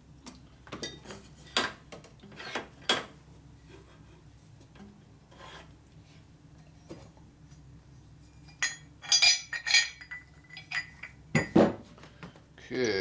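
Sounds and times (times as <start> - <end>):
faint steady hum: 0.0 - 13.0
metal tools handled: 8.6 - 11.1.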